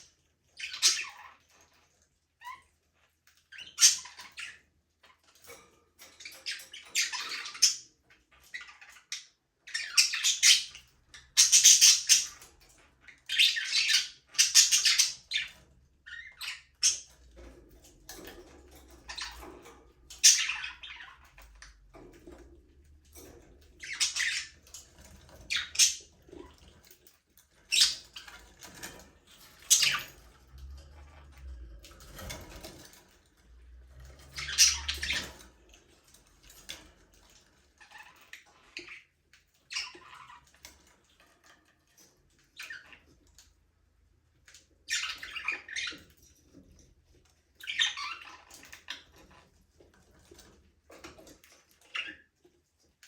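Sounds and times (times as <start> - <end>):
budgerigars chirping and squawking: 0.0 - 43.6, 44.3 - 52.4.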